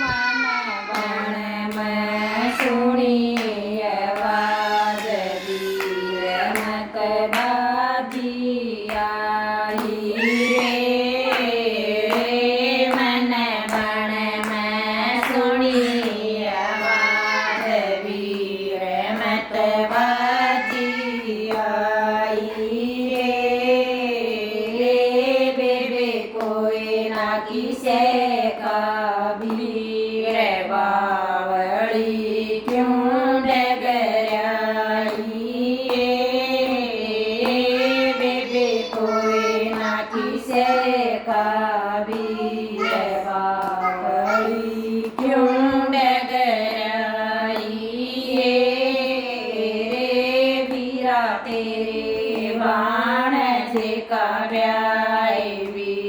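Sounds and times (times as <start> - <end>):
sharp hand claps: 9.7 - 16.2, 34.3 - 40.7, 42.1 - 44.2, 45.0 - 45.5, 49.9 - 52.6.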